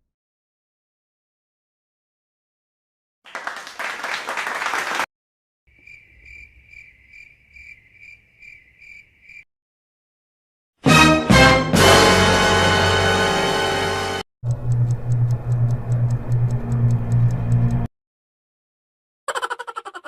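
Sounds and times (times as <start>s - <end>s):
cricket chirping: 5.7s - 9.5s
music: 10.8s - 14.2s.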